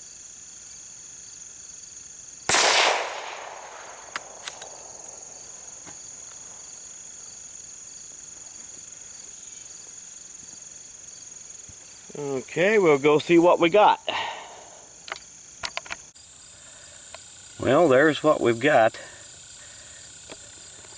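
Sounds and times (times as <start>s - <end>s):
insect chirring: 0.0s - 20.9s
rifle shot with echo: 2.5s - 5.9s
light clicks: 3.1s - 5.4s.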